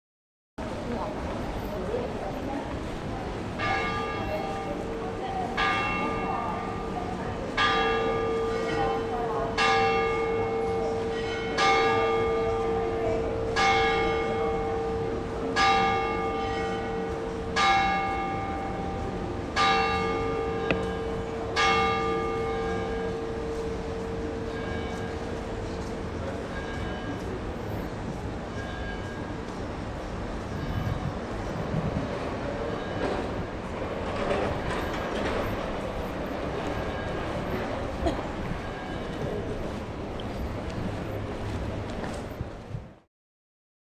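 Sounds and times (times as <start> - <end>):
church bell tolling: 3.4 - 27.7, 28.4 - 29.6, 32.4 - 40.6
wind rumble on microphone: 29.2 - 43.1.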